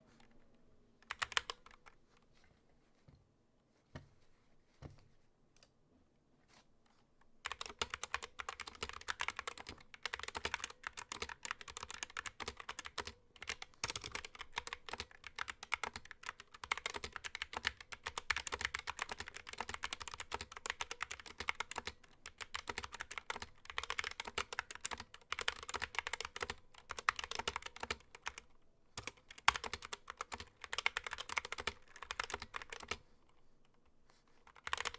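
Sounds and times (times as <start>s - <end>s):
mechanical keyboard typing: 1.0s - 1.9s, 7.4s - 28.4s, 29.0s - 33.0s, 34.4s - 34.9s.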